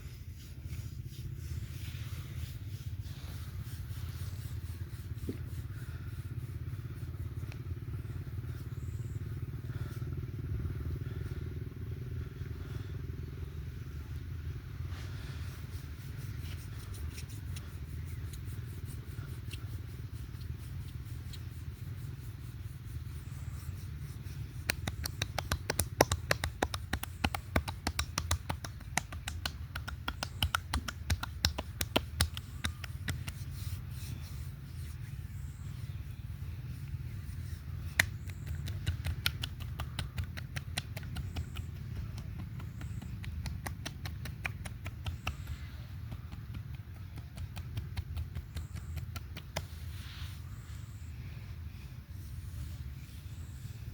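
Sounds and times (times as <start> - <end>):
hands rubbing oiled skin: 0.0 - 9.1, 14.8 - 50.8
steady low hum: 0.0 - 53.9
sharp slaps on skin: 24.6 - 33.5, 37.8 - 49.8.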